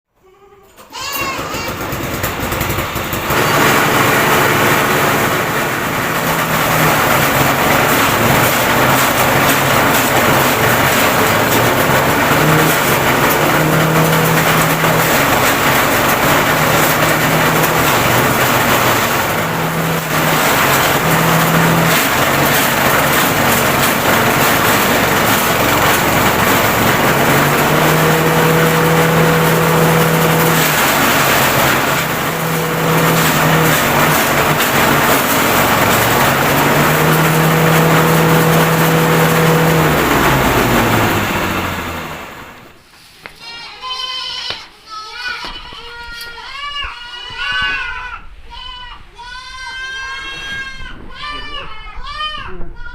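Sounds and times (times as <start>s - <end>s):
grass chopper shredding grass: 0.9s - 42.8s
steady machine hum: 1.2s - 42.8s.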